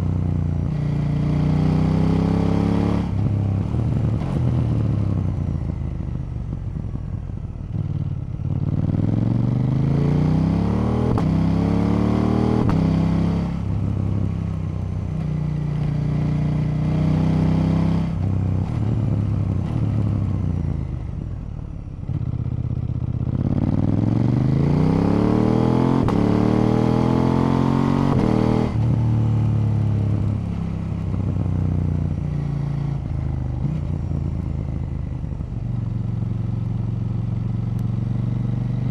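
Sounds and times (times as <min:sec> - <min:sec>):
motorcycle engine revving: 0:00.6 - 0:05.5, 0:07.7 - 0:14.3, 0:22.1 - 0:38.9.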